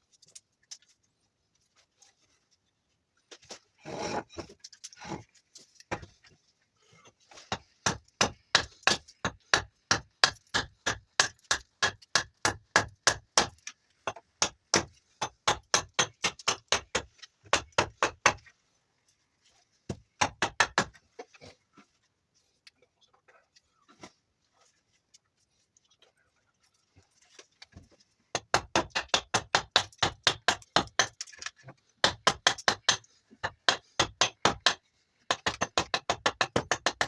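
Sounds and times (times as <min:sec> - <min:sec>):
axe chopping wood: 0:07.5 - 0:18.4, 0:20.2 - 0:21.0, 0:28.4 - 0:37.0.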